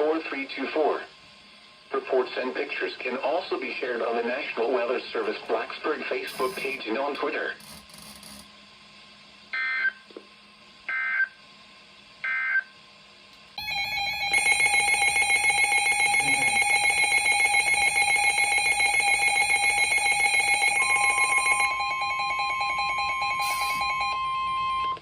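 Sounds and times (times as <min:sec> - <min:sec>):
screeching digital data bursts: 0:06.3 - 0:06.8, 0:14.3 - 0:24.2
loud steady alert tone: 0:13.6 - 0:25.0.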